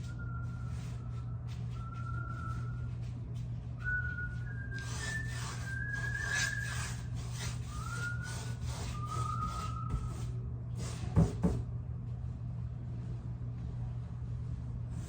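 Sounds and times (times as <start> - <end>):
person whistling a slow tune: 0.0 - 3.0, 3.8 - 7.0, 7.7 - 10.1
steady low hum: 0.0 - 15.0.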